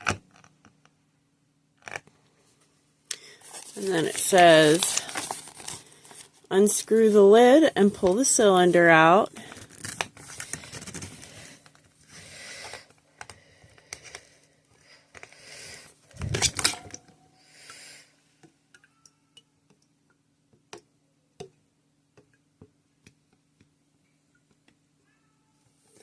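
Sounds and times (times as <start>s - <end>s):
plastic rubbing and scraping: 9.4s - 14.2s, 16.1s - 17.0s.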